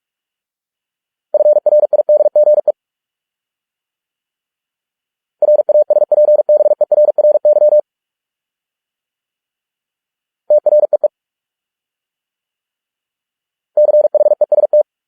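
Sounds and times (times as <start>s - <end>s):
morse code beeps: 1.4s - 2.7s, 5.4s - 7.8s, 10.5s - 11.1s, 13.8s - 14.8s.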